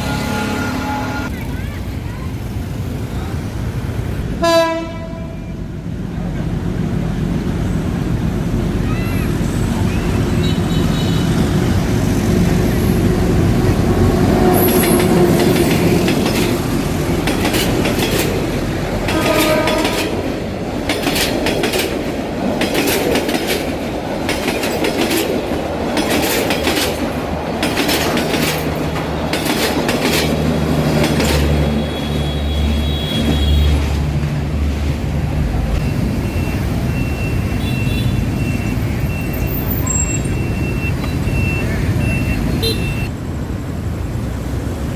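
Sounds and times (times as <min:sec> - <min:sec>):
passenger train rumbling past: 0:00.0 - 0:44.9
wheels clattering over rail joints: 0:13.1 - 0:31.8.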